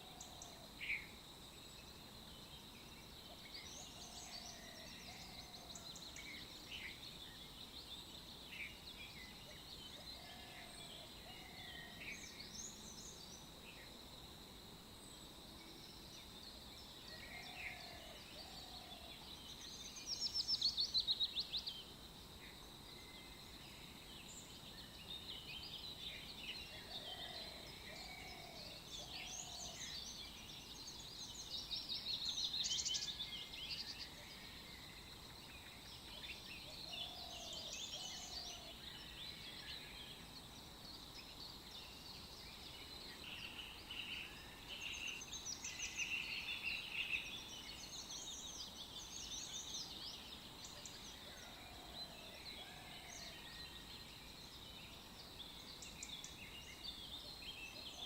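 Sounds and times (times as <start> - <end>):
birds chirping and trilling: 1.7 - 13.5, 15.6 - 21.9, 22.9 - 58.0.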